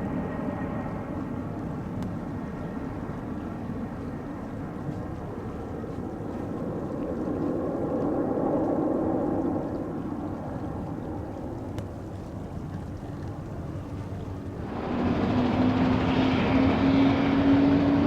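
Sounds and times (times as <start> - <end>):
helicopter rotor and turbine: 14.4 - 18.0.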